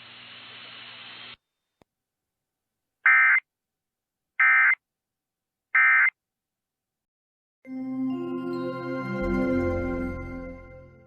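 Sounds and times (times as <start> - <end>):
faint radio hiss and hum: 0.0 - 1.8.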